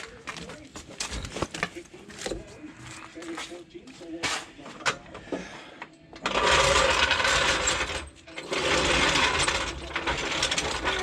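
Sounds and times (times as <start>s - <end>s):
hydraulic jack metallic rattling: 6.2s - 11.0s.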